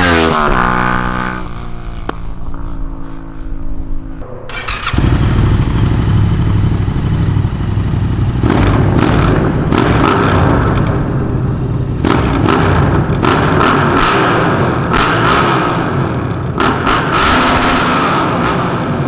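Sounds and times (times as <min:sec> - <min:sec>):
motorcycle engine running: 0:04.5 - 0:19.0.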